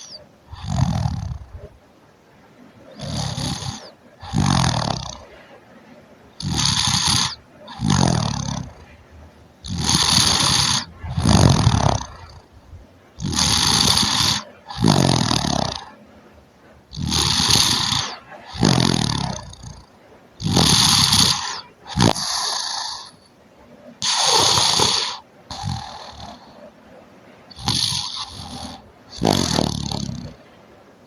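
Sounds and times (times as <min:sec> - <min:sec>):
person snoring: 0:00.0 - 0:01.7, 0:02.9 - 0:05.4, 0:06.4 - 0:09.0, 0:09.6 - 0:12.5, 0:13.2 - 0:16.0, 0:16.9 - 0:23.2, 0:24.0 - 0:26.7, 0:27.5 - 0:30.4.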